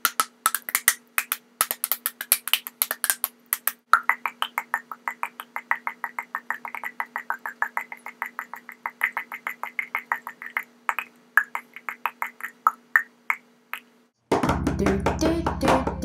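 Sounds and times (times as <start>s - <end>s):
mouth clicking: 2.0s - 14.0s.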